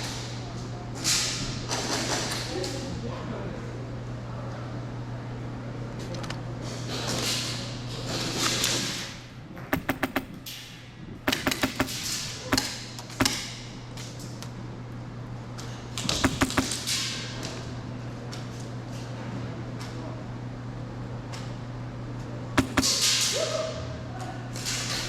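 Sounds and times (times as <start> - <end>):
airsoft gunfire: 9.6 - 10.6, 11.3 - 13.6, 16.1 - 17.0, 22.6 - 23.3.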